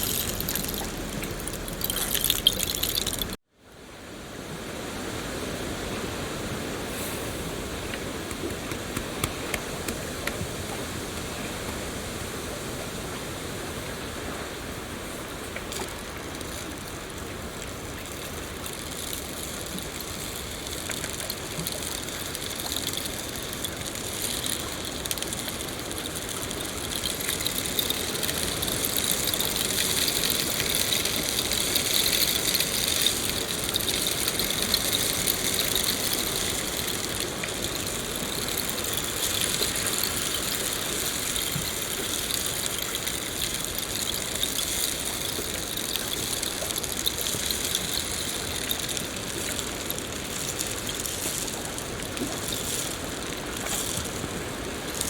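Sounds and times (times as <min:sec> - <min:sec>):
rain drop ticks: 0:00.0 - 0:03.4, 0:15.7 - 0:54.2
steady rain hiss: 0:00.0 - 0:55.0.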